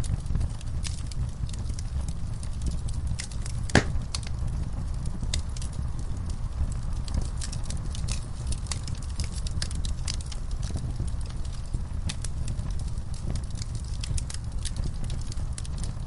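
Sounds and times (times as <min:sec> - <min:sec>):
low steady fire rumble: 0:00.0 - 0:16.0
wood fire crackling and popping: 0:00.0 - 0:16.0
loud sharp pop: 0:03.7 - 0:04.0.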